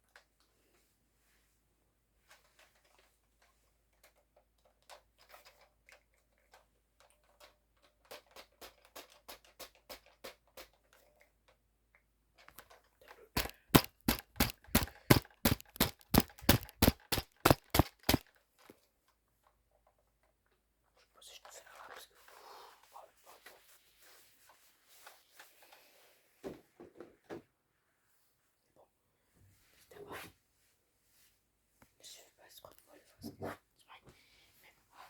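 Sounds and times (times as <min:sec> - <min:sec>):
sharp taps: 0:13.4 - 0:18.2.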